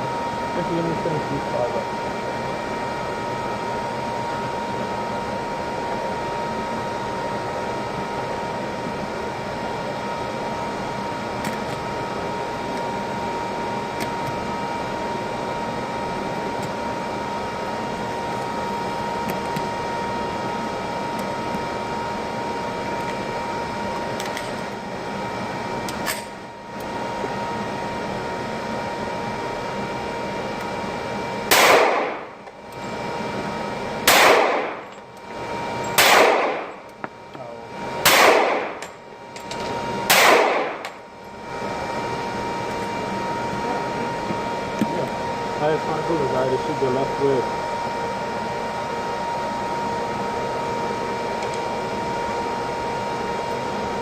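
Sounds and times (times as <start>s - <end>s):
steady hum: 0.0s - 54.0s
gunshots: 31.5s - 32.2s, 34.1s - 34.8s, 36.0s - 36.7s, 38.0s - 38.7s, 40.1s - 40.8s.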